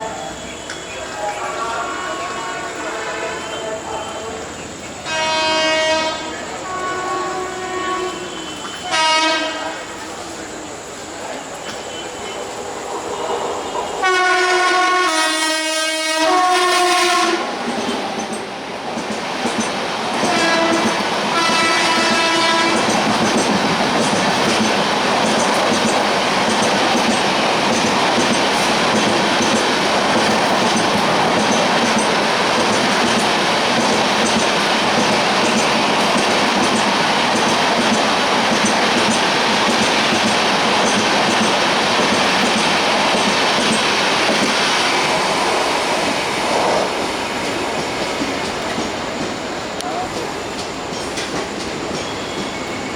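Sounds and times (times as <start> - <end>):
train coaches running at speed: 0.0 - 52.9
locomotive horn blasts: 1.1 - 4.4, 5.0 - 9.8, 14.0 - 17.5, 20.3 - 22.9.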